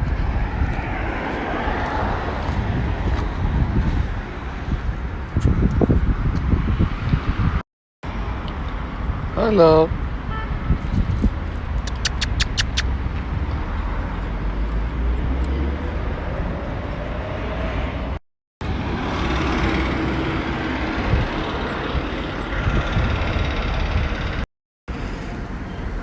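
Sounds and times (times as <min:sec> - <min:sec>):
outdoor background rumble: 0:00.0 - 0:26.0
sharp high ticks: 0:11.8 - 0:12.9.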